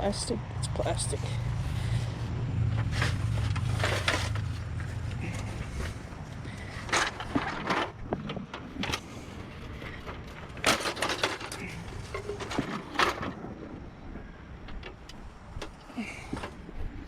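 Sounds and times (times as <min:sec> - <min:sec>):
low rumble: 0:00.0 - 0:10.7
junk clattering and knocking: 0:02.5 - 0:16.7.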